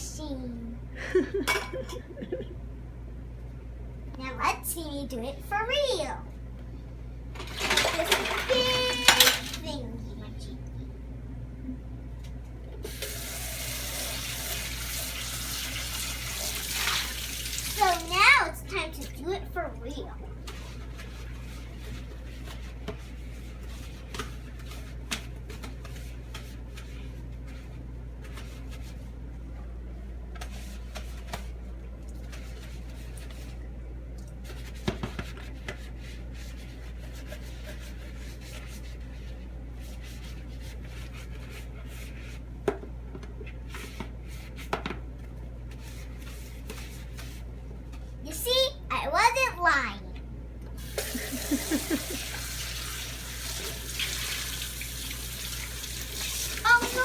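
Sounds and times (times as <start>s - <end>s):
steady low hum: 0.0s - 7.5s, 9.3s - 12.9s
dishes clinking at a sink: 1.4s - 2.1s.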